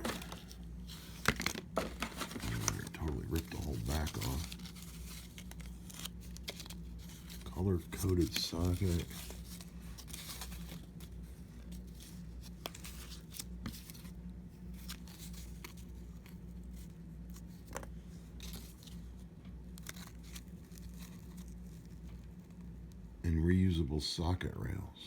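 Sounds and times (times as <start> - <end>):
packaging crackling and tearing: 0.0 - 16.4, 19.7 - 22.6
steady low hum: 0.0 - 25.0.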